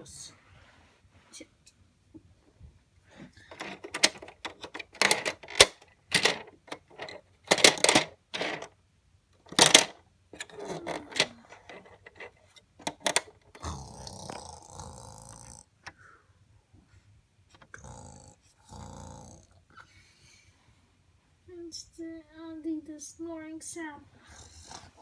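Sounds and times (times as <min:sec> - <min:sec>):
toy trains clacking: 0:03.5 - 0:08.7, 0:09.5 - 0:13.6.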